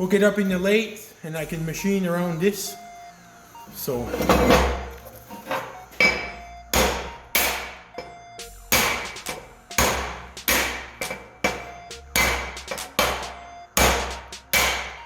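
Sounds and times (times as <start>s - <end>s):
hammer striking metal: 5.6s - 8.1s, 8.7s - 15.0s.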